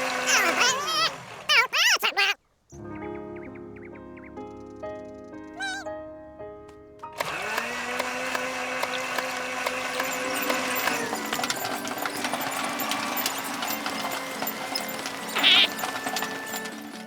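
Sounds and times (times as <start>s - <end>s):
clattering whirring mechanism: 0.0s - 1.6s, 7.2s - 17.0s
fast mechanical clicks: 7.2s - 17.0s.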